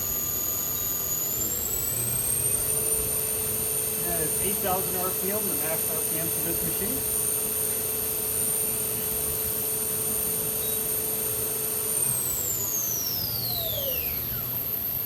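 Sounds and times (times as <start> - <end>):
machine spindle whining: 0.0 - 15.0.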